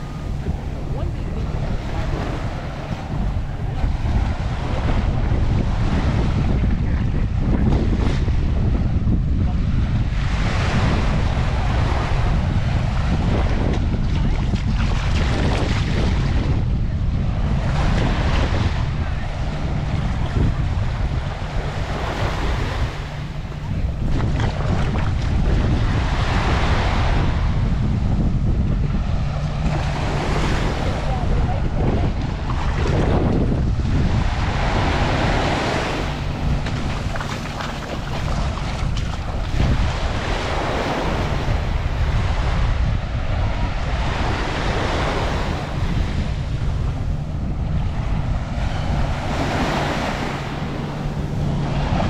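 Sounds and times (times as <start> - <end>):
surf washing up beach: 0.0 - 52.0
wind buffeting microphone: 0.0 - 52.0.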